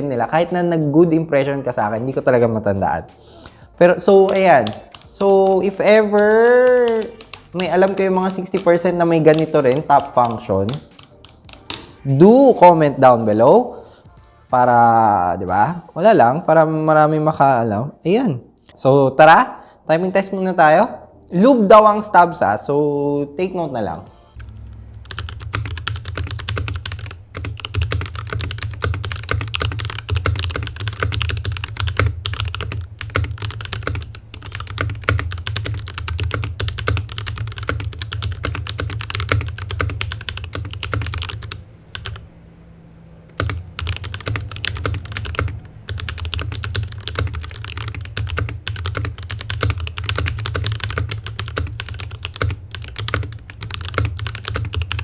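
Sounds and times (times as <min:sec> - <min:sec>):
fast typing on mechanical keyboard: 0:03.9 - 0:12.0, 0:24.4 - 0:42.2, 0:43.3 - 0:55.0.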